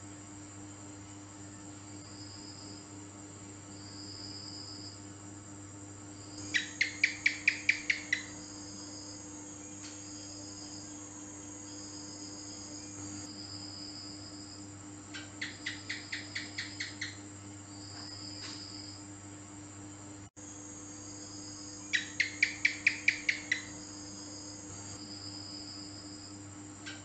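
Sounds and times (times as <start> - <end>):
high insect trilling: 6.2 - 19.0, 20.5 - 27.0
gecko chirping: 6.4 - 8.6, 15.2 - 17.2, 21.9 - 23.8.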